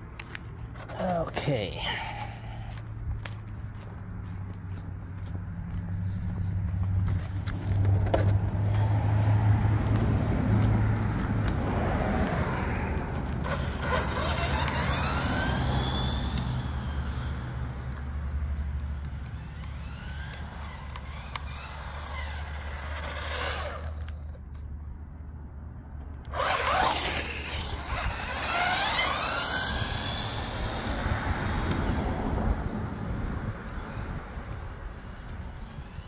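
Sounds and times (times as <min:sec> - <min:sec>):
toy car motor whining: 0:13.4 - 0:18.0, 0:19.0 - 0:24.3, 0:26.3 - 0:31.0, 0:34.9 - 0:36.0.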